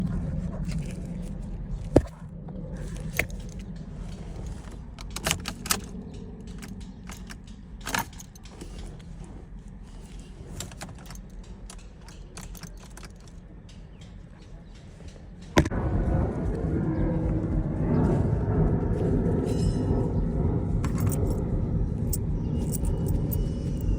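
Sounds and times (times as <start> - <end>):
steady rumble: 0.0 - 23.9
keys clinking: 4.4 - 9.0, 9.9 - 13.4, 20.8 - 21.4, 22.0 - 23.9.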